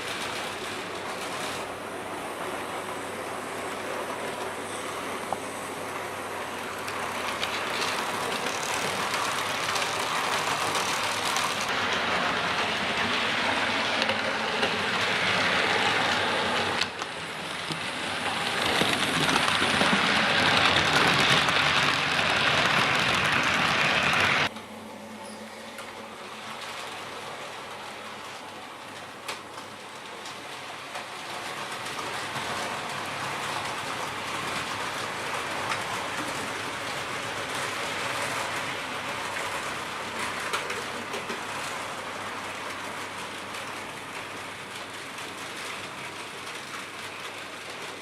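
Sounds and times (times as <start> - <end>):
wheels rattling over rails: 6.4 - 24.7
model train motor whirring: 7.1 - 11.7.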